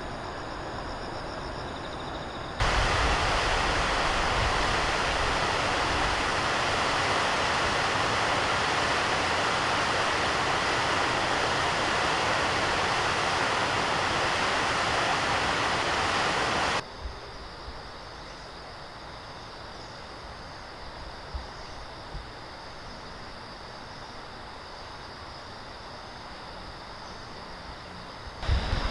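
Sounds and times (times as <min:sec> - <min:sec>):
flowing river water: 0:02.6 - 0:16.8, 0:28.4 - 0:28.9.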